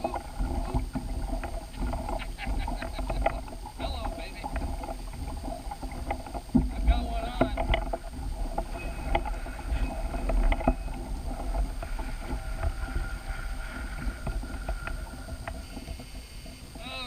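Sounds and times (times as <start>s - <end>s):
fishing gear clicks and knocks: 0.0s - 16.7s
wind rumble on microphone: 0.0s - 17.0s.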